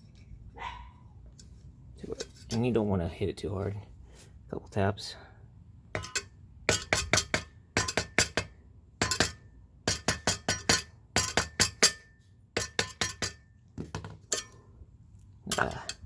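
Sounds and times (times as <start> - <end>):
mallet tapping metal cap: 6.0 - 13.4.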